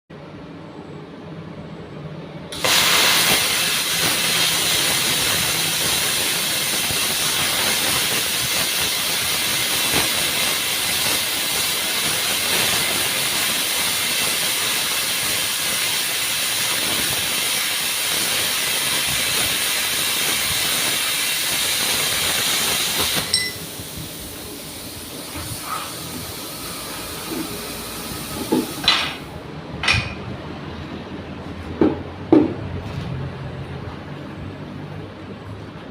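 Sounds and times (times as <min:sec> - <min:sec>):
plasma cutter hissing: 0:02.5 - 0:29.3.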